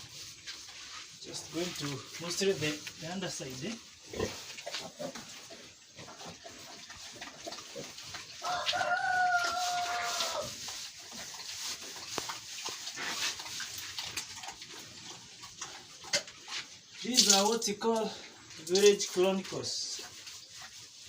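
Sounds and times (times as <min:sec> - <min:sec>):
faint knocks and scrapes: 0:00.0 - 0:17.0
rooster crowing: 0:08.4 - 0:10.5.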